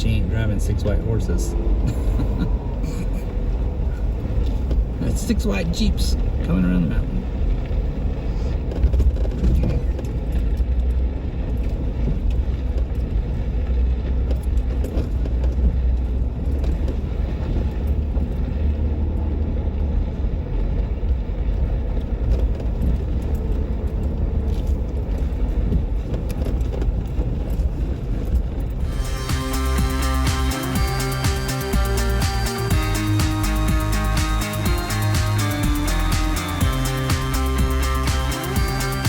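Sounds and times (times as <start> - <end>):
engine and tyres rumbling: 0.0 - 39.0.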